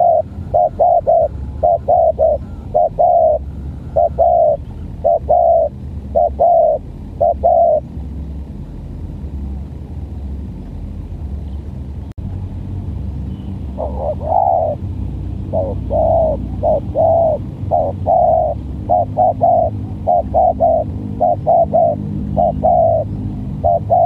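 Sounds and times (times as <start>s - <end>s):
dove cooing: 0.0s - 7.8s, 13.8s - 14.8s, 15.4s - 24.0s
steady low rumble: 0.0s - 24.0s.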